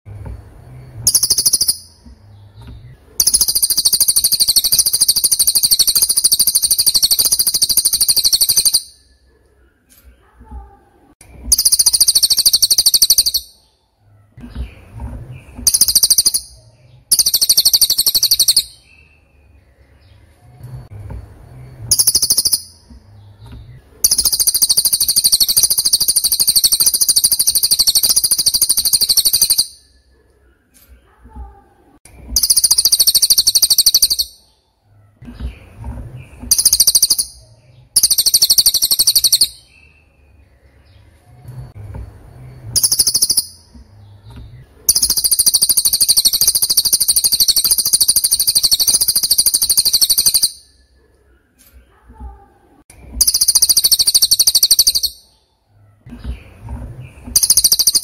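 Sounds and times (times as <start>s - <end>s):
bird high rapid trilling song: 0.8s - 9.2s, 11.4s - 13.7s, 14.5s - 20.2s, 21.6s - 30.0s, 32.3s - 34.5s, 35.4s - 41.0s, 42.5s - 50.9s, 53.2s - 55.4s, 56.2s - 58.0s.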